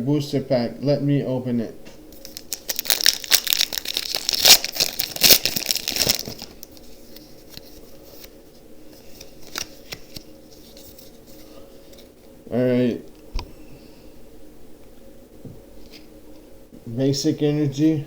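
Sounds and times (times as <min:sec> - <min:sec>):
foil wrapper crinkling and tearing: 0:02.2 - 0:08.3, 0:09.2 - 0:11.2.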